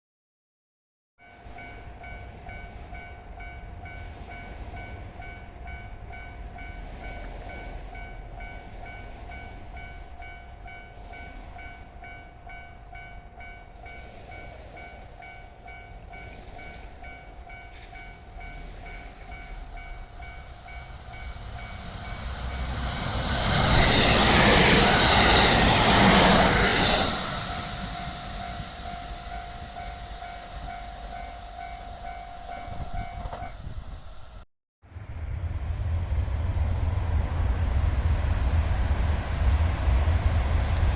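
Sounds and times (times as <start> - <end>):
train passing: 1.2 - 40.9
level crossing bell ringing: 27.3 - 33.3.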